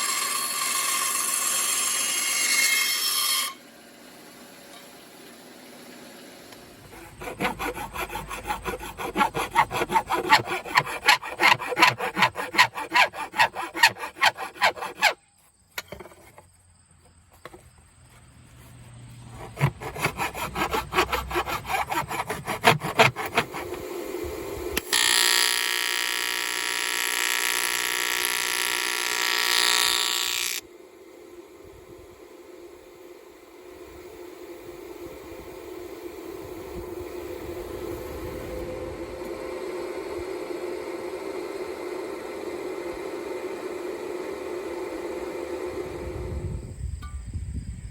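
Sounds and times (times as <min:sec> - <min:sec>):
pitched machine hum: 0:04.2 - 0:15.2, 0:19.1 - 0:47.0
hand tool scraping metal: 0:06.8 - 0:15.2, 0:15.8 - 0:16.4, 0:19.2 - 0:23.8.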